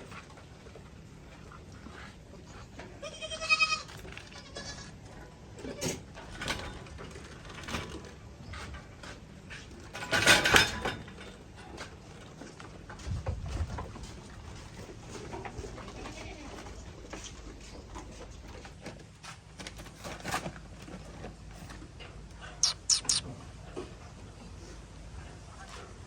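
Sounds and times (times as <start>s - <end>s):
goats bleating: 2.9s - 5.0s.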